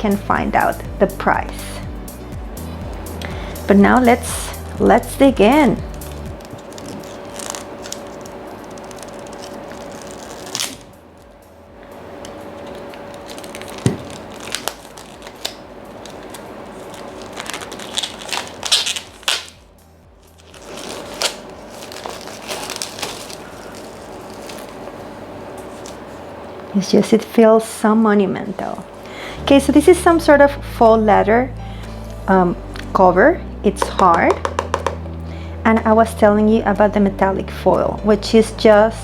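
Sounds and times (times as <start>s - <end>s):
plastic wrapping crinkling and ripping: 5.8s - 11.0s, 12.6s - 26.2s.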